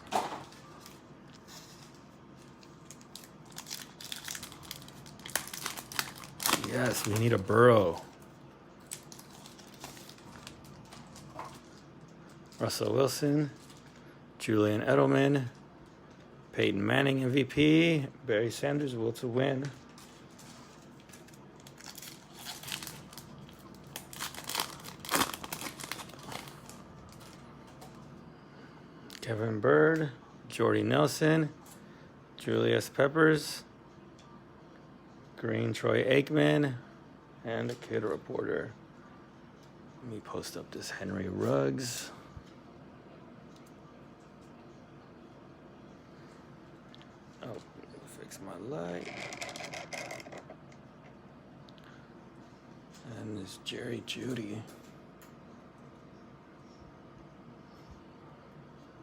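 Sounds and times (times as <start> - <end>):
packaging crinkling and tearing: 2.4 - 8.2, 8.8 - 12.7, 19.7 - 27.8.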